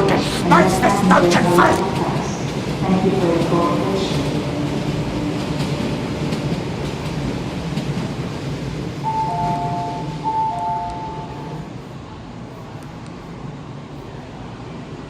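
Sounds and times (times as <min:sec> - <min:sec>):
electric train rumbling: 0:00.0 - 0:15.0
two-tone signal: 0:09.1 - 0:11.6.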